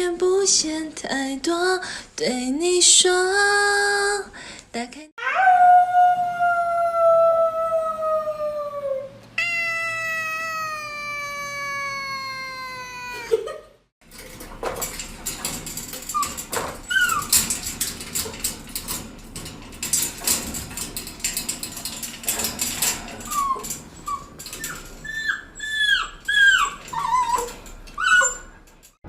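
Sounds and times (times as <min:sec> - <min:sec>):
dog whimpering: 0:05.2 - 0:13.4, 0:23.2 - 0:28.6
clattering clicks and knocks: 0:14.0 - 0:29.0.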